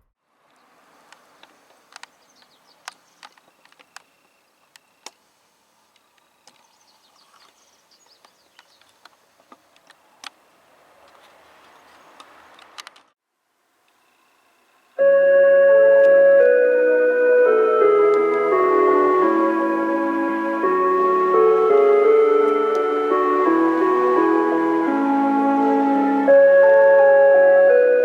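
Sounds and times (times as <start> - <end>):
faint outdoor background: 0.0 - 28.0
high falling chirps: 15.0 - 28.0.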